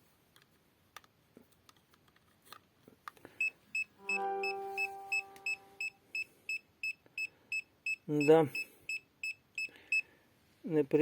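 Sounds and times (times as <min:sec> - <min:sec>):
meter alarm beeping: 0:04.0 - 0:06.0
steady low tone: 0:04.0 - 0:06.0.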